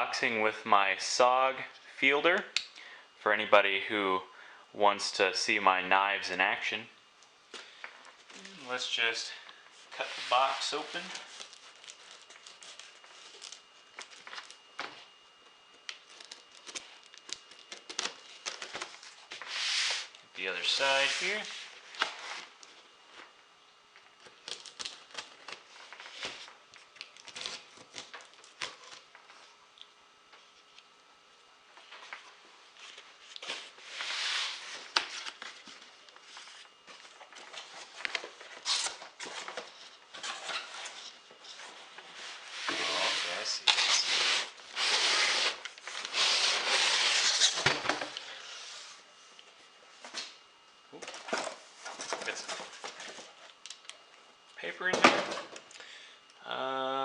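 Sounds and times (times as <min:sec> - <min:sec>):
knife cutting tape and cardboard: 0:42.7 - 0:47.7.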